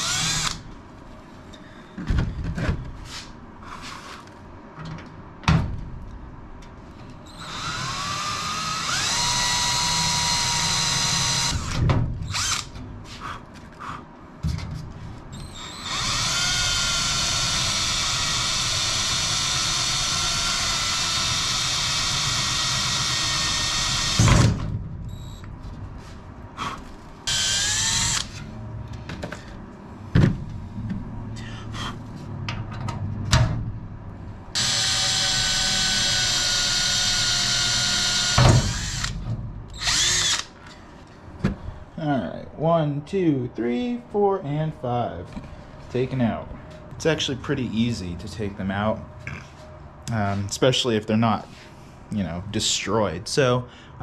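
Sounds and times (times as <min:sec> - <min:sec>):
power drill whining: 0:00.0 - 0:00.6, 0:07.3 - 0:12.7, 0:15.4 - 0:24.2, 0:27.3 - 0:28.4, 0:34.6 - 0:39.2, 0:39.8 - 0:40.5.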